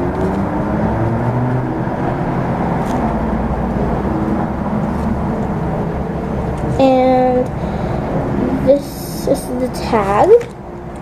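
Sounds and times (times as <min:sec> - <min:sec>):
low rumbling background noise: 0:00.0 - 0:11.0.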